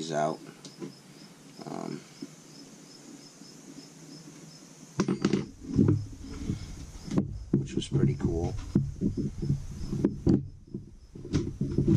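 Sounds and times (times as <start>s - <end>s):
cricket chirping: 0.0s - 11.9s
sharp clicks and knocks: 5.0s - 11.9s.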